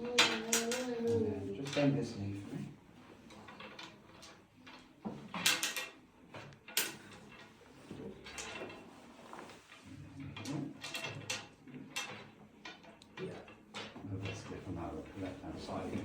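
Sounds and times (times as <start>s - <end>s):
treatment table knocking and creaking: 1.8s - 16.0s
person shifting on table rustling: 6.8s - 11.2s.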